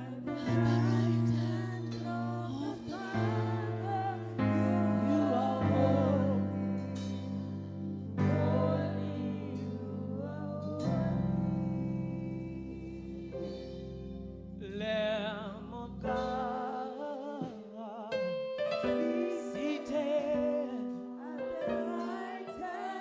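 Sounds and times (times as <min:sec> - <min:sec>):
person singing wordless melody: 0:00.0 - 0:23.0
sustained gospel chords: 0:00.0 - 0:23.0.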